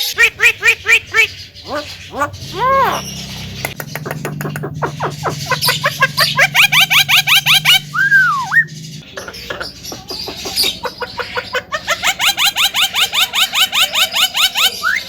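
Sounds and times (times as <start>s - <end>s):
bird whistle: 0.0s - 3.4s, 4.8s - 8.7s, 10.5s - 15.0s
myna chirping: 0.0s - 15.0s.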